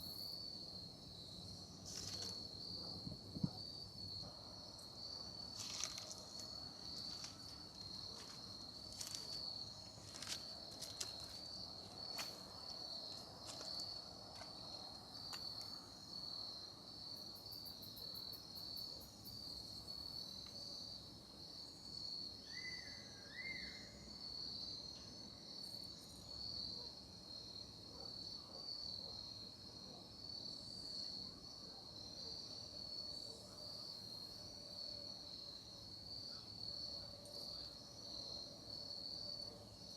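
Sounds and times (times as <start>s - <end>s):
crickets trilling: 0.0s - 29.4s.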